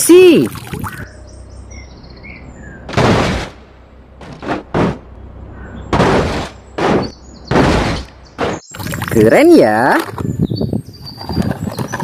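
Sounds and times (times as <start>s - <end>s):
splashing and scrubbing in water: 8.5s - 10.2s.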